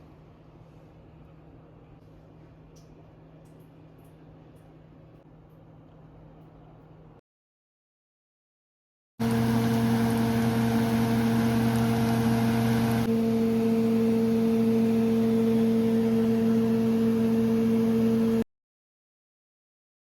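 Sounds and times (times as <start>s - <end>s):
appliance motor hum: 9.2s - 18.4s.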